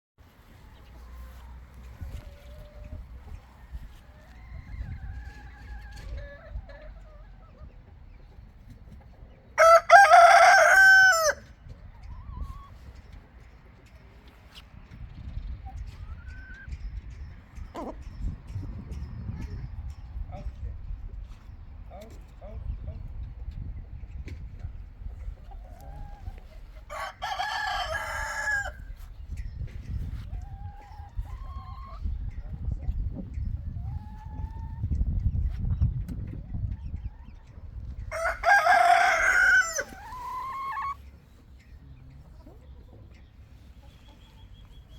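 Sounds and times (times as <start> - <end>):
chickens clucking: 0.4 - 44.9
rooster crowing: 9.6 - 11.4, 26.9 - 28.8, 38.1 - 41.0
chicken call: 38.2 - 41.0.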